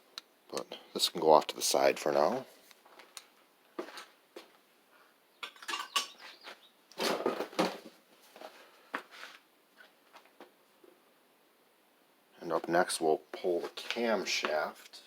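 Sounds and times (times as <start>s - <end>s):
metal parts clinking and clattering: 5.4s - 6.2s.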